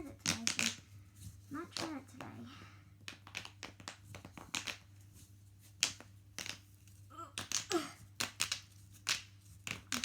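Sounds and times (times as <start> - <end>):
plastic fidget toys clicking: 0.0 - 0.8.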